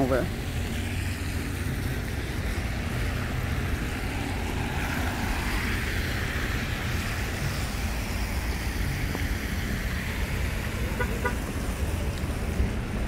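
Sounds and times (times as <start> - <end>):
rain hissing: 0.0 - 13.0.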